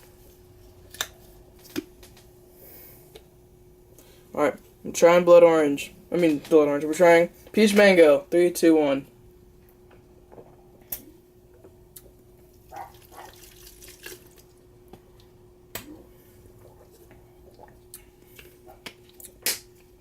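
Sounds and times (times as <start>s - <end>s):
faint steady hum: 0.0s - 20.0s
person sipping and swallowing: 15.9s - 19.4s.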